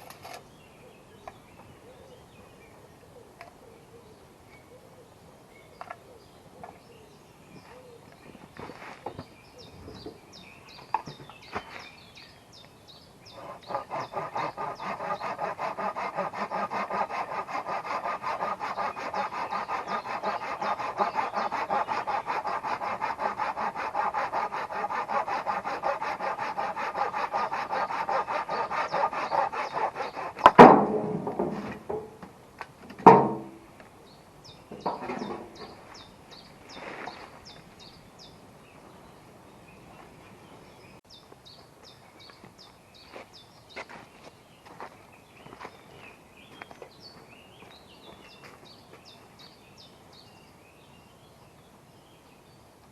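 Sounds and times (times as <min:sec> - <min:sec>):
hand saw cutting wood: 0:13.3 - 0:31.9
loud knocks: 0:30.4 - 0:32.1.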